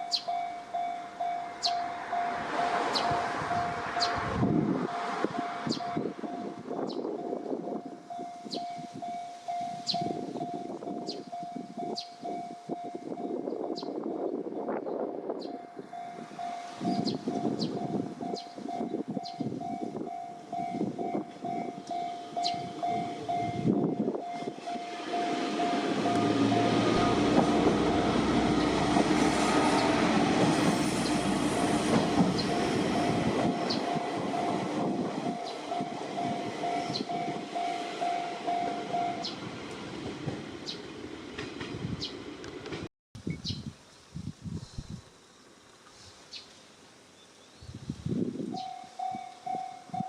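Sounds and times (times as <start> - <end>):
level crossing warning bell: 0.0 - 13.5, 15.6 - 30.2, 31.1 - 39.4, 48.6 - 50.0
train running and wheel noise: 0.0 - 47.1, 47.7 - 50.0.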